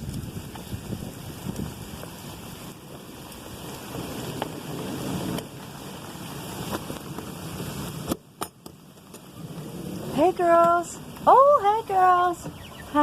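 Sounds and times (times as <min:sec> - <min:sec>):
steady rain falling: 0:00.0 - 0:13.0
wind buffeting microphone: 0:00.0 - 0:13.0.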